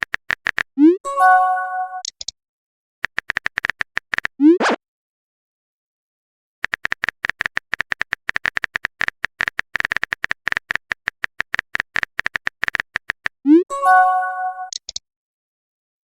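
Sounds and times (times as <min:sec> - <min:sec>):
phone keyboard typing clicks: 0:00.0 - 0:00.7, 0:03.0 - 0:04.3, 0:06.6 - 0:13.4, 0:14.6 - 0:15.0.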